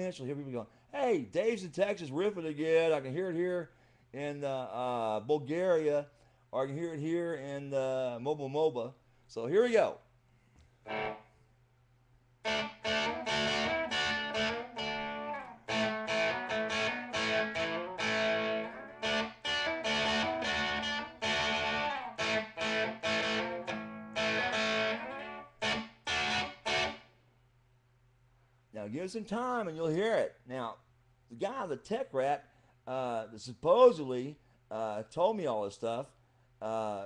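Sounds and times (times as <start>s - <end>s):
distorted electric guitar riffing: 10.8s - 11.2s, 12.4s - 27.0s.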